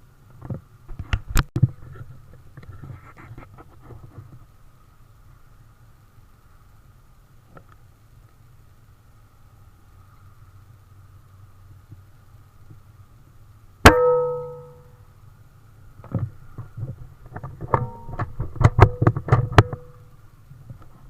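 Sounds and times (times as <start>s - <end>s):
air rifle shot with metallic ring: 13.9s - 14.9s.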